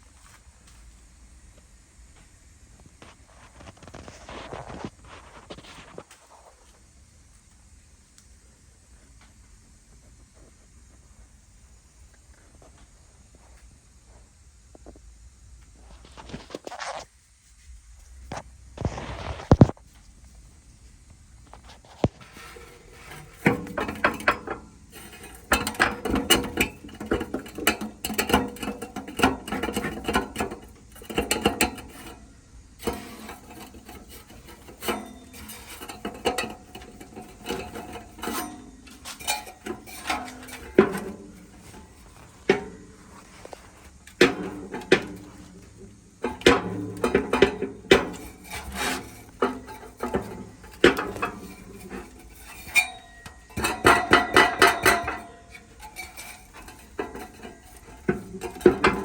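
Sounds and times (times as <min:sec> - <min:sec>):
metal exhaust silencer clanking: 0:22.3 - 0:59.0.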